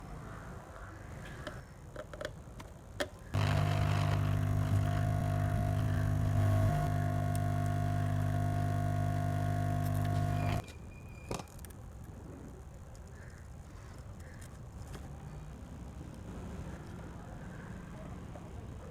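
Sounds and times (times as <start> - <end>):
electric hum with low buzz: 3.4 - 10.6.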